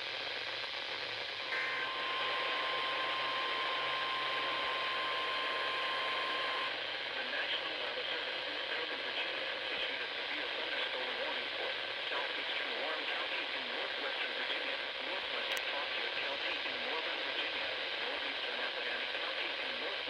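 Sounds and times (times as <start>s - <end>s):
radio receiver hiss: 0.0s - 20.0s
steady alarm tone: 1.4s - 6.7s.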